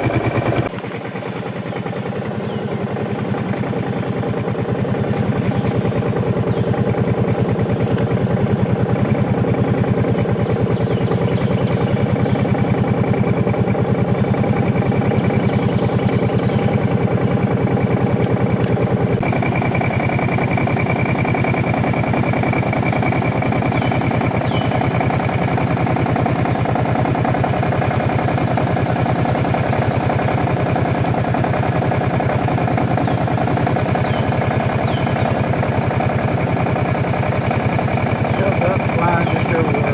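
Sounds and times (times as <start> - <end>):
boat motor running: 0.0 - 39.9.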